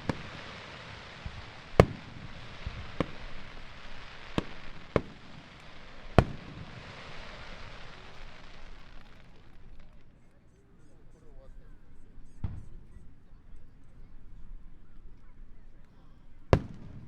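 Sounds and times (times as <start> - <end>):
firework shells booming: 0.0 - 10.0, 16.5 - 17.0
continuous hiss: 0.0 - 17.0.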